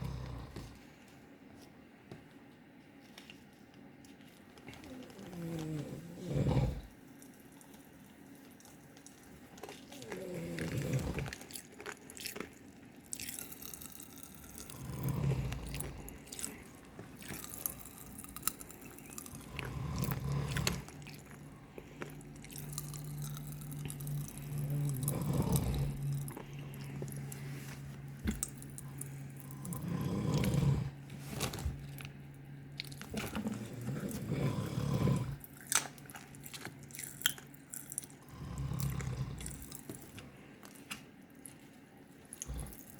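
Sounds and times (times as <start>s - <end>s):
man snoring: 0.0s - 0.7s, 5.4s - 6.9s, 14.7s - 16.2s, 19.4s - 20.9s, 24.0s - 26.4s, 29.5s - 31.0s, 33.7s - 35.4s, 38.3s - 39.5s.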